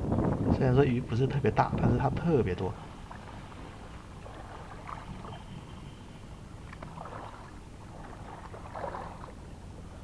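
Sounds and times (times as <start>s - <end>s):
seawater lapping on rocks: 2.8s - 5.6s, 6.6s - 10.0s.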